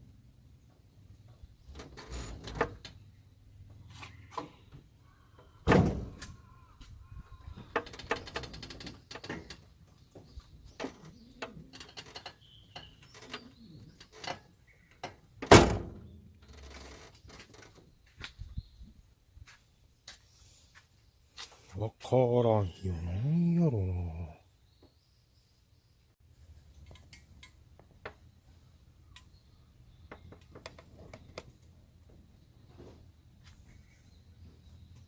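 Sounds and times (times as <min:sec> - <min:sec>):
short creaking squeaks: 0:01.7 - 0:02.9, 0:07.6 - 0:09.6, 0:10.8 - 0:15.0, 0:16.4 - 0:17.8.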